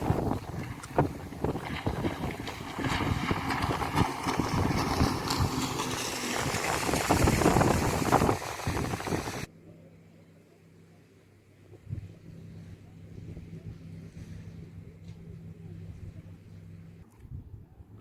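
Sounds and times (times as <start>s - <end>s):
wind buffeting microphone: 0.0s - 9.5s.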